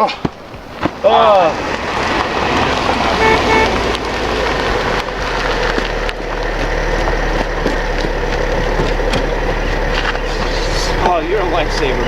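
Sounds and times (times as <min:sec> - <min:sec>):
car engine rumble: 0:00.0 - 0:12.0
road noise: 0:00.0 - 0:12.0
car horn toots: 0:03.1 - 0:04.0.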